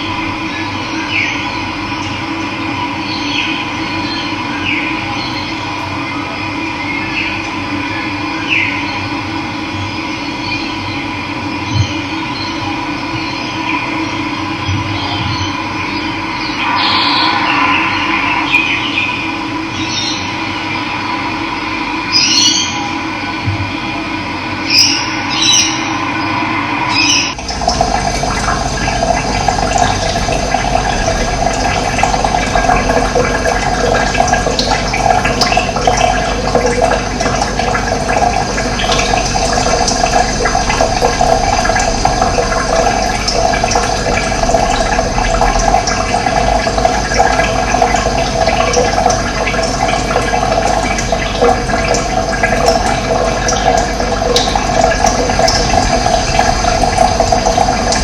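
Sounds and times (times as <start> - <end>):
running water rushing: 16.3 - 20.5, 24.7 - 58.0.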